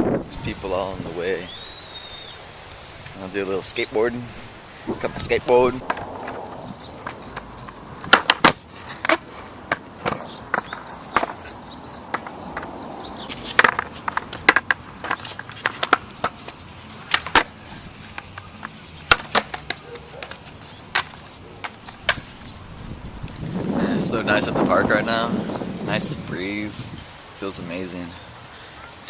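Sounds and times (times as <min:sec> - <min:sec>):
skateboard wheels rumbling: 0:01.4 - 0:27.9
skateboard clacks: 0:05.8 - 0:11.5, 0:12.1 - 0:22.4.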